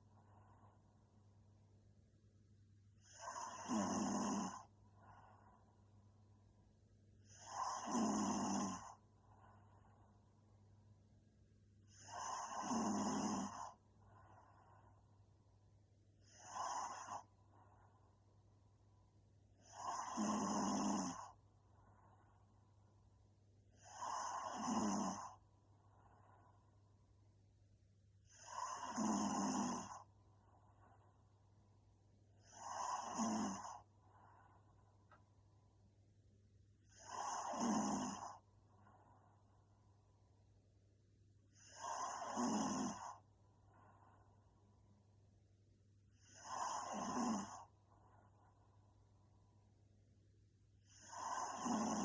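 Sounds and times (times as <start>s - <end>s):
soft breathing: 0.0s - 1.8s, 2.9s - 7.9s, 8.6s - 20.2s, 21.1s - 27.6s, 29.8s - 52.0s
woman snoring: 3.0s - 5.7s, 7.2s - 9.9s, 11.9s - 14.9s, 16.2s - 17.3s, 19.5s - 21.4s, 23.7s - 25.4s, 28.2s - 30.1s, 32.4s - 35.2s, 36.8s - 38.5s, 41.5s - 44.3s, 46.1s - 48.3s, 50.8s - 52.0s.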